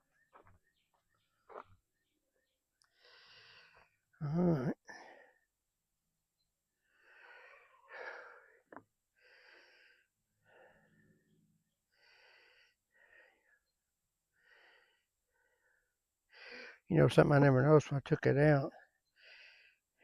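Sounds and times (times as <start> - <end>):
faint breathing: 2.8 - 4.0, 4.8 - 5.5, 6.8 - 11.3, 11.9 - 13.7, 14.3 - 16.9, 18.8 - 20.0.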